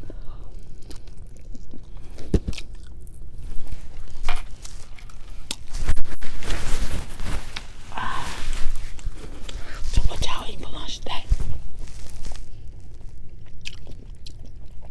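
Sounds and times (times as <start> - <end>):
chewing and biting chicken wing: 0.4 - 5.7, 12.4 - 14.9.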